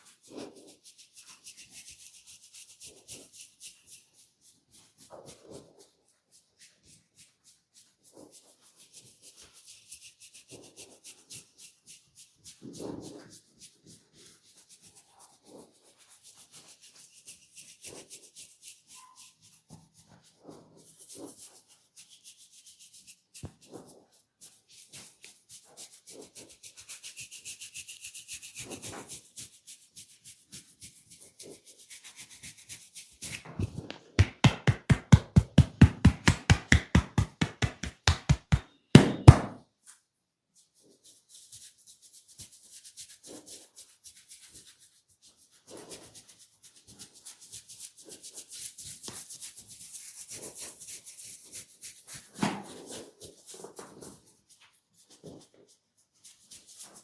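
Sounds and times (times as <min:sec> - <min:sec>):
fingertips scratching scalp: 0:00.0 - 0:38.8, 0:40.8 - 0:57.0
hair rustling: 0:11.0 - 0:39.2.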